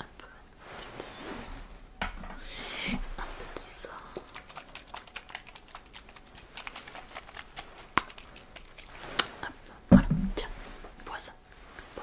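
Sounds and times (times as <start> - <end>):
soft thump: 1.4 - 3.3, 9.9 - 10.7.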